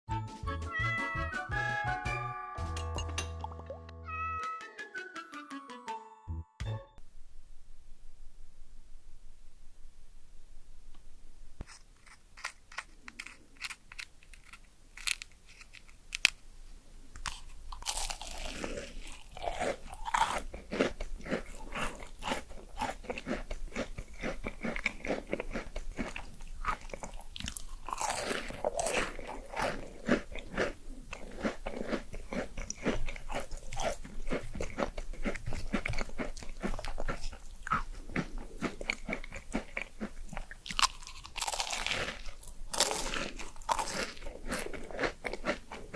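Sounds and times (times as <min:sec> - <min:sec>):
crunchy chewing: 0:11.6 - 0:16.4, 0:17.2 - 0:45.9.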